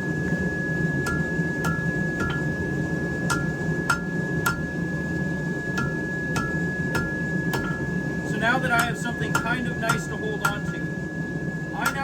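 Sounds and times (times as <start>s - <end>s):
steady hum: 0.0s - 12.0s
hammer striking steel on anvil: 1.0s - 4.8s, 5.7s - 7.9s, 8.8s - 10.8s, 11.8s - 12.0s.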